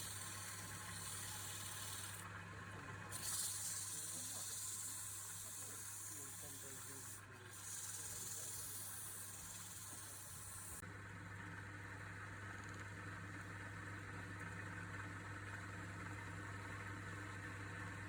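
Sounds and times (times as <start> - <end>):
wood lathe motor humming: 0.0 - 10.8.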